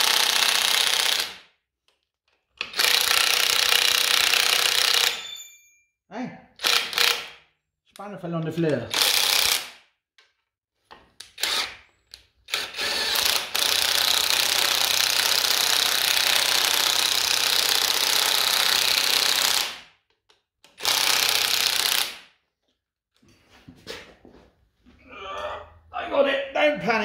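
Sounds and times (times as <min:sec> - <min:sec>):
air impact wrench running: 0:00.0 - 0:01.4, 0:12.5 - 0:19.8, 0:20.8 - 0:22.2.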